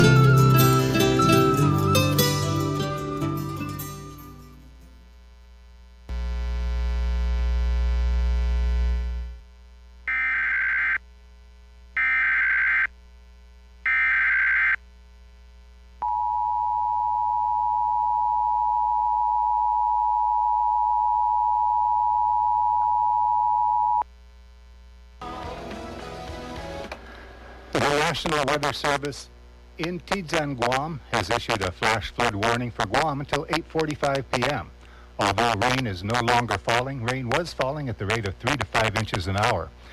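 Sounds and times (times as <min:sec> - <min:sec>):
music: 0:00.0 - 0:05.0, 0:25.2 - 0:27.3.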